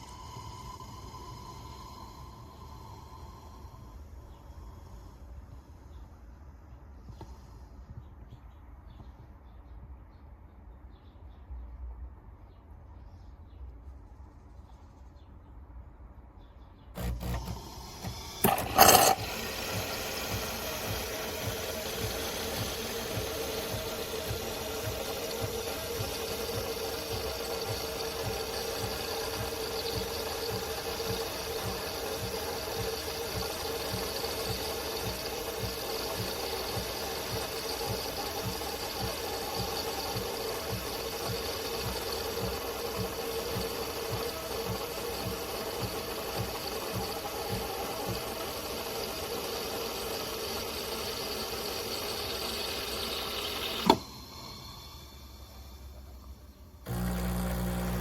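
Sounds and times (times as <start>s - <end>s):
espresso machine humming: 0.0s - 4.0s, 17.0s - 58.0s.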